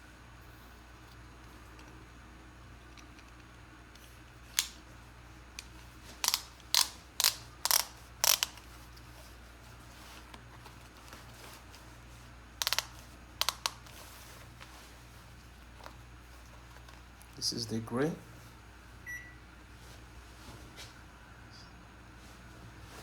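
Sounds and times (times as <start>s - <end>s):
ratchet buckle clicking: 5.6s - 8.7s, 12.6s - 14.0s.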